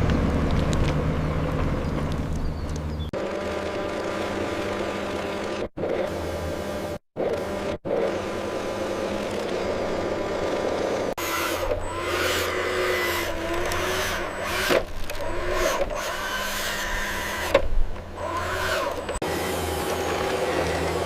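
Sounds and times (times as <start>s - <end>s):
small electric motors whirring: 7.2s - 21.0s.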